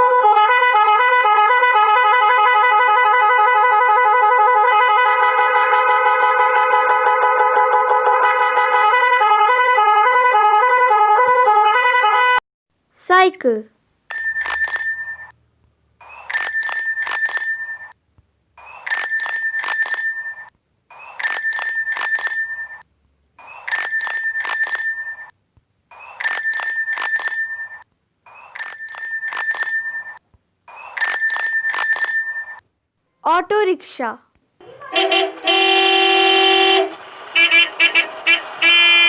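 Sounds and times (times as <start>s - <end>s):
bicycle bell ringing: 14.1s - 15.3s, 16.3s - 18.0s, 18.9s - 20.5s, 21.2s - 22.8s, 23.7s - 25.3s, 26.2s - 27.8s, 28.6s - 30.2s, 31.0s - 32.6s.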